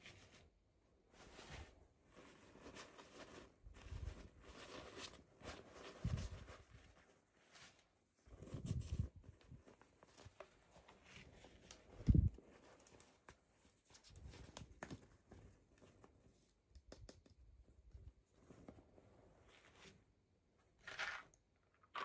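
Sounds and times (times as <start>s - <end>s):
plastic and cardboard rustling: 1.1s - 16.5s.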